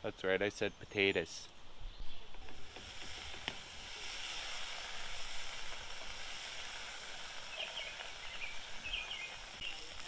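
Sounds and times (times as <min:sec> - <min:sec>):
potatoes sizzling in a skillet: 0:02.4 - 0:10.0.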